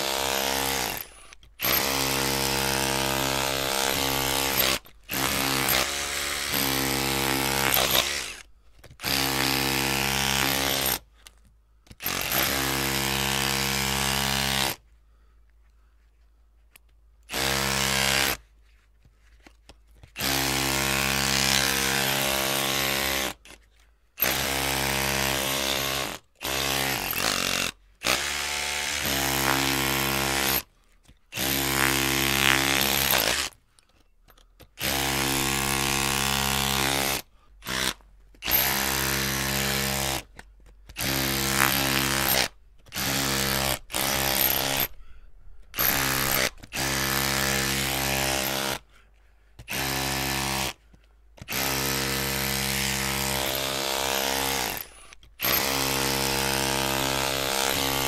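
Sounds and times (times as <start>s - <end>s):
electric drill motor whining: 0.0s - 9.8s, 41.0s - 45.0s, 55.4s - 58.0s.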